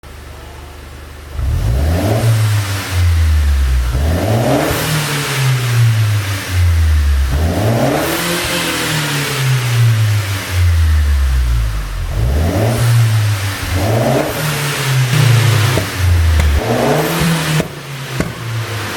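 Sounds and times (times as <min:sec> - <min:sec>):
car engine idling and revving: 0:00.0 - 0:18.9
exhaust pops: 0:11.0 - 0:18.9.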